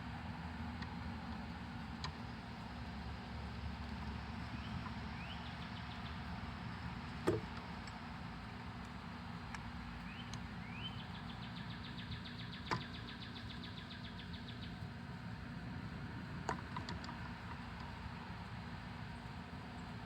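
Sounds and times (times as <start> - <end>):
low outdoor rumble: 0.0 - 20.0
bird singing trills: 4.4 - 6.3, 10.0 - 14.8.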